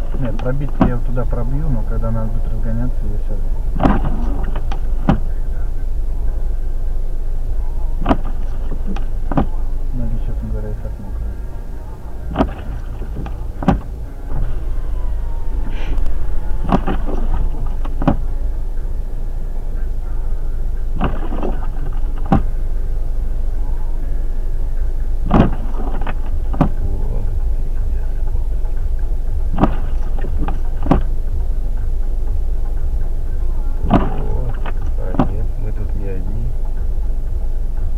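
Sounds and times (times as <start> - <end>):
windshield wipers knocking: 0.0 - 2.2, 3.7 - 5.4, 8.0 - 19.1, 20.9 - 22.6, 25.2 - 27.5, 28.9 - 31.3, 33.8 - 37.5
car engine rumble: 0.0 - 37.9.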